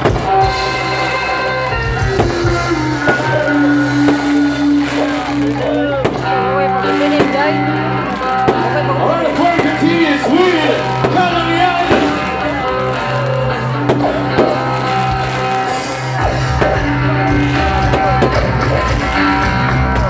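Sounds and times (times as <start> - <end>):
loud rock music with guitar: 0.0 - 20.0
sharp hits: 13.9 - 15.6, 16.2 - 19.1.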